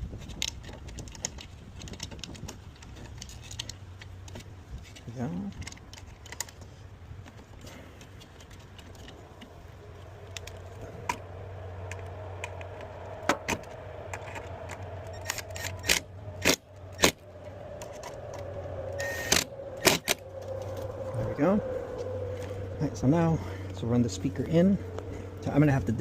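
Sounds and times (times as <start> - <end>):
metallic clicks of handled screws: 0.1 - 9.6, 14.1 - 17.2
faint steady hum: 3.2 - 26.0.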